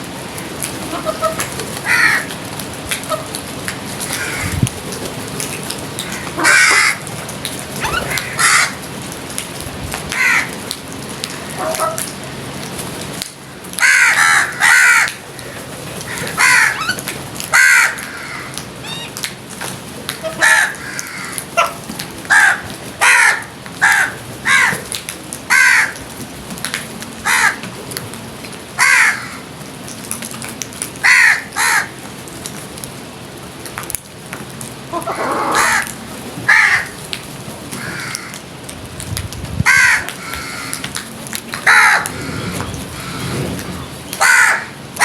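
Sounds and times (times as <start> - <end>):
crows cawing: 1.0 - 2.4, 4.1 - 4.6, 6.0 - 7.1, 7.8 - 8.9, 10.2 - 10.6, 13.8 - 19.2, 20.2 - 21.7, 22.3 - 24.9, 25.5 - 26.0, 27.2 - 27.6, 28.8 - 29.5, 31.0 - 32.0, 35.0 - 37.0, 37.7 - 38.5, 39.6 - 41.0, 41.6 - 43.3, 44.2 - 44.8.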